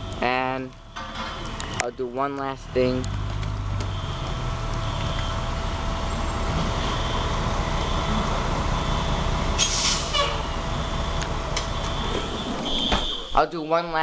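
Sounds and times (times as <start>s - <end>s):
fire truck engine rumbling: 0.0s - 14.0s
air brakes hissing: 9.6s - 10.4s.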